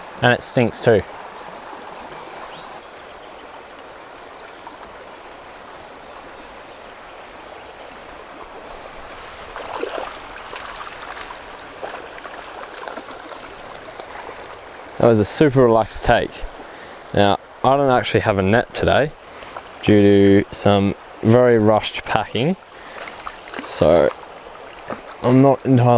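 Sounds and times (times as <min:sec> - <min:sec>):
stream water running: 0:00.0 - 0:25.9
water splashing: 0:08.0 - 0:14.8, 0:22.6 - 0:25.9.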